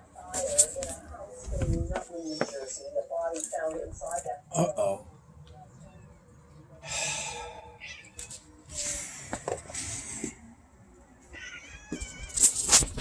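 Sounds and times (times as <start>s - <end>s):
cats meowing: 7.1s - 8.8s, 11.3s - 12.6s.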